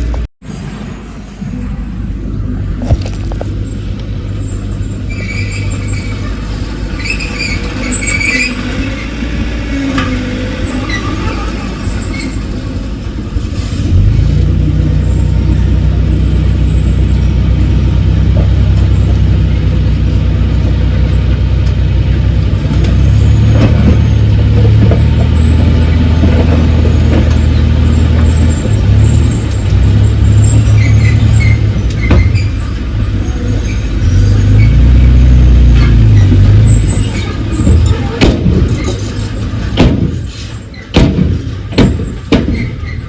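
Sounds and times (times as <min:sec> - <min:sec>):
diesel engine running loud: 0:00.0 - 0:43.0
metallic knocks: 0:35.9 - 0:42.9.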